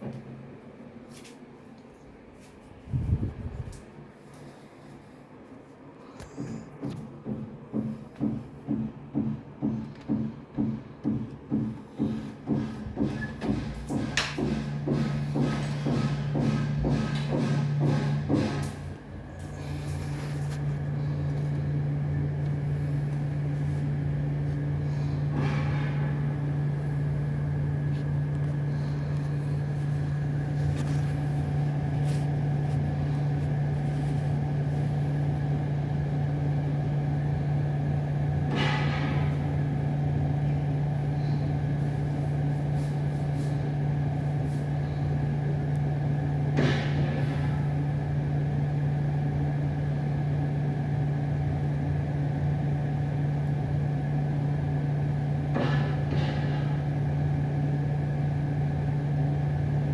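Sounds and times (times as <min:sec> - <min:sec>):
low mechanical hum: 0:00.0 - 0:59.9
knocks from neighbouring unit: 0:06.4 - 0:18.9, 0:46.5 - 0:47.5.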